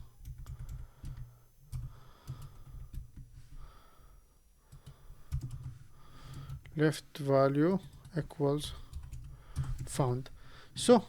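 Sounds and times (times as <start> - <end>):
computer keyboard clicks: 0.2 - 3.3, 4.7 - 5.7
soft breathing: 0.5 - 6.8, 8.6 - 10.8.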